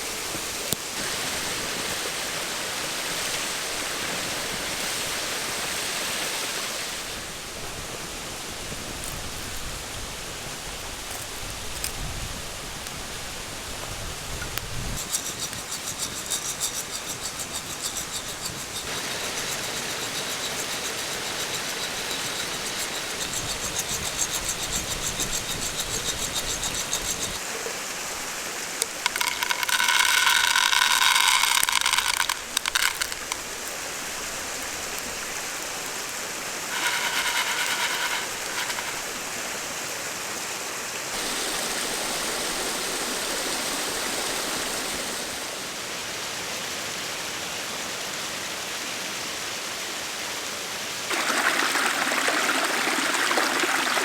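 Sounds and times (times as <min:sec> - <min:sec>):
mountain stream flowing: 0:00.0 - 0:11.2, 0:12.6 - 0:54.0
fast rhythmic ticking: 0:15.0 - 0:27.4.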